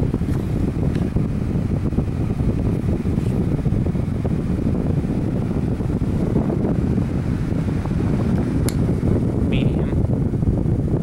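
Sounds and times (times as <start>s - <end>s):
fan airflow whoosh: 0.0s - 11.0s.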